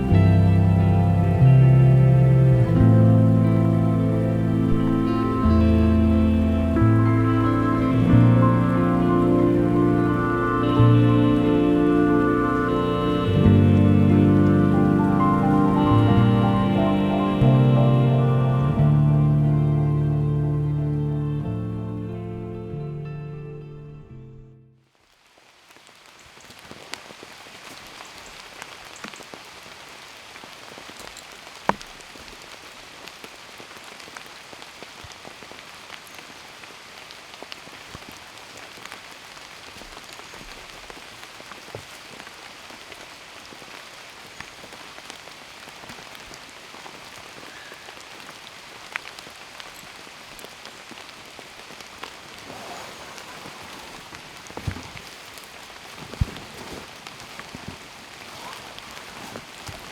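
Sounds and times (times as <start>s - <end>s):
rain falling: 0.0s - 23.7s, 24.8s - 59.9s
raindrops tapping and dripping: 25.1s - 59.9s.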